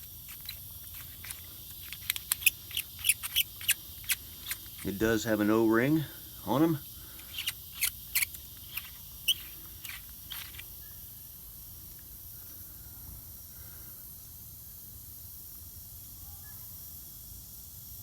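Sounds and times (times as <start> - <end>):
faint steady hum: 0.0 - 18.0
scope turret clicks: 0.2 - 4.9, 7.2 - 10.7.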